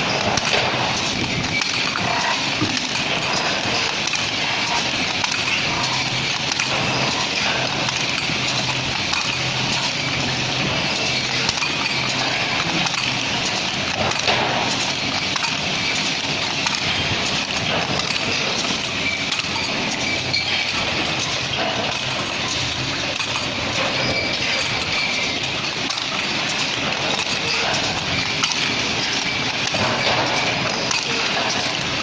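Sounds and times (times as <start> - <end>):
metal-spinning lathe running: 0.0 - 32.0.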